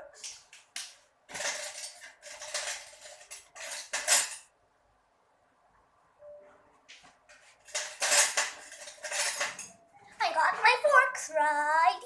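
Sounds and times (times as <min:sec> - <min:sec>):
metal forks clattering: 0:01.3 - 0:04.5, 0:07.6 - 0:09.8.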